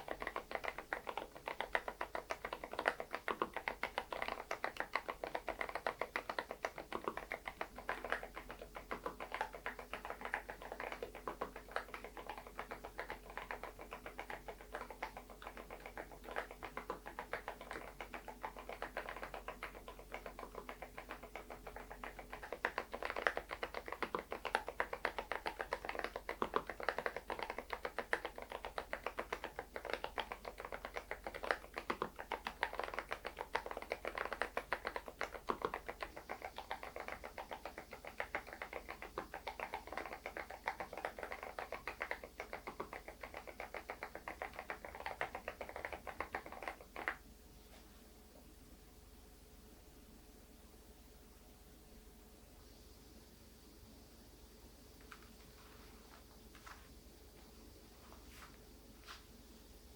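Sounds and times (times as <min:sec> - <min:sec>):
typing on mechanical keyboard: 0:00.0 - 0:47.2.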